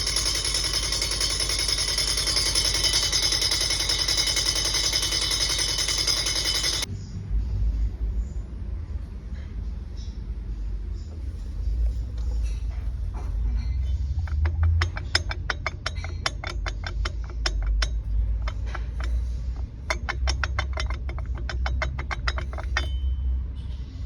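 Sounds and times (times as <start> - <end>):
engine running: 0.0 - 6.9, 11.1 - 23.8
rapid metallic clicking: 0.0 - 6.9, 11.4 - 23.2.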